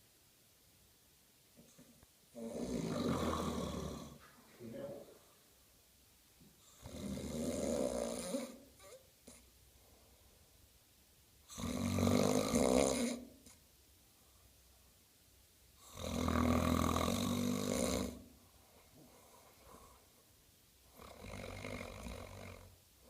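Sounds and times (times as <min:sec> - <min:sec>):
quiet breaths: 0:01.5 - 0:23.0
person snoring: 0:02.4 - 0:04.2, 0:06.6 - 0:09.4, 0:11.5 - 0:13.3, 0:15.8 - 0:18.2, 0:21.0 - 0:22.7.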